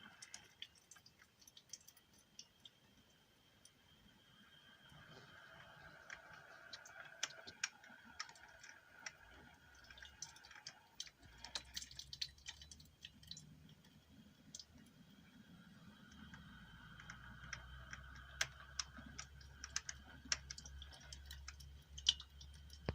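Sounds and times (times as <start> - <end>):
low steady hum: 0.0 - 22.9
coffee maker clicking and ticking: 5.7 - 13.6, 16.1 - 22.9.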